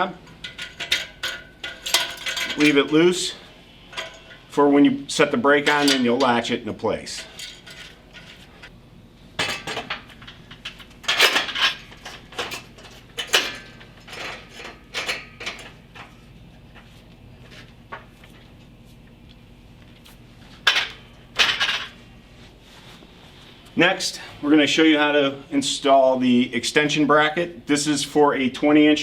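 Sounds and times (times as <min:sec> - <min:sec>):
metal parts clanking: 0:00.2 - 0:04.6, 0:05.6 - 0:06.5, 0:07.1 - 0:08.7, 0:09.4 - 0:16.2, 0:20.6 - 0:22.0.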